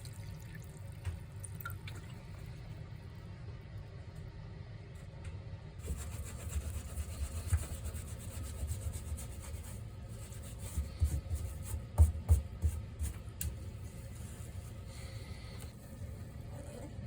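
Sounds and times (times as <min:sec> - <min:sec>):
rubbing and scraping: 0:05.8 - 0:13.2.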